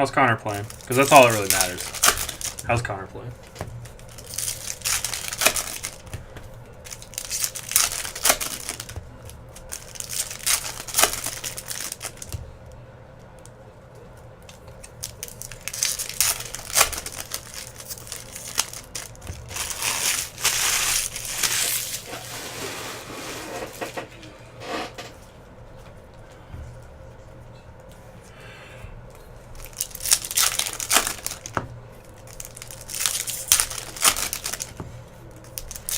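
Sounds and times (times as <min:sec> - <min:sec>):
foil wrappers crinkling and tearing: 0:00.4 - 0:12.4, 0:14.5 - 0:24.0, 0:29.6 - 0:34.8, 0:35.4 - 0:35.9.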